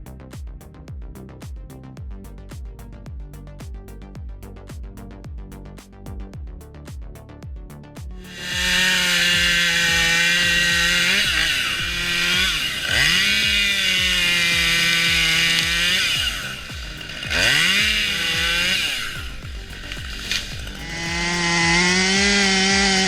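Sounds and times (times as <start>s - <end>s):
faint music beat: 0.0s - 23.0s
chainsaw engine revving: 8.3s - 23.0s.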